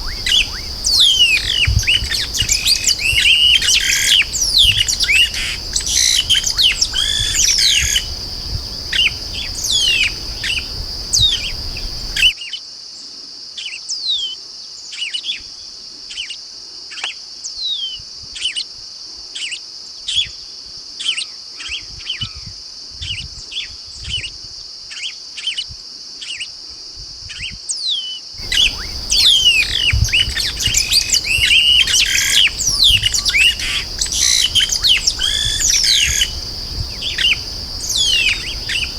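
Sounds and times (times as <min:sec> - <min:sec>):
birds chirping and whistling: 0:00.0 - 0:12.3, 0:28.4 - 0:38.9
steady high hiss: 0:00.0 - 0:12.4, 0:28.4 - 0:38.9.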